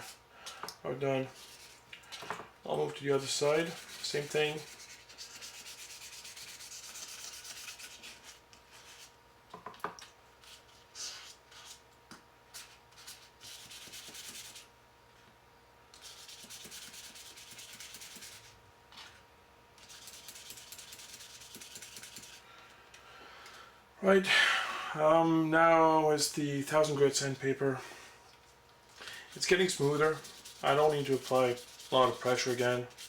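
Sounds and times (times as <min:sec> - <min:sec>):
sandpaper scrubbing hiss: 0:29.2 - 0:33.0.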